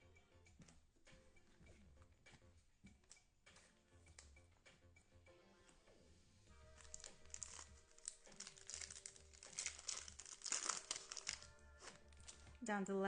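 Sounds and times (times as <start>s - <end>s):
background music with low beat: 0.0s - 13.0s
card wrapper crinkling and tearing: 6.6s - 12.6s.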